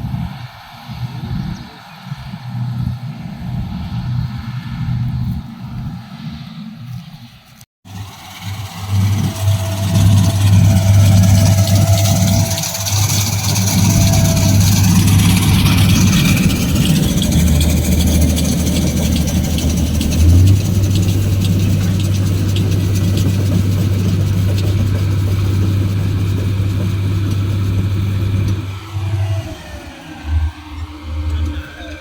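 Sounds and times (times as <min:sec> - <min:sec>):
machinery engine droning: 0:00.0 - 0:32.0.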